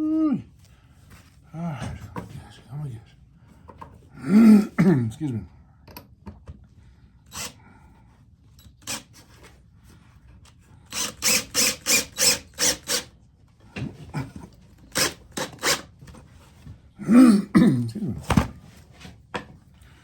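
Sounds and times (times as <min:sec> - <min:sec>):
man coughing: 0:04.2 - 0:05.5, 0:17.0 - 0:18.3.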